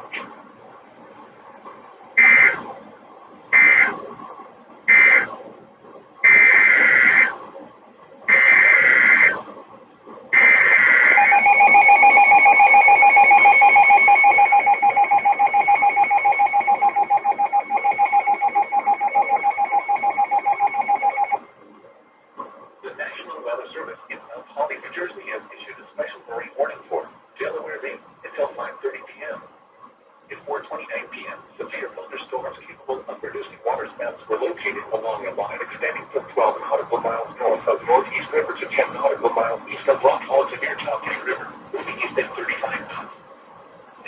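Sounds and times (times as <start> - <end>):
digital data bursts: 10.4 - 21.4
steady alert tone: 10.4 - 21.4.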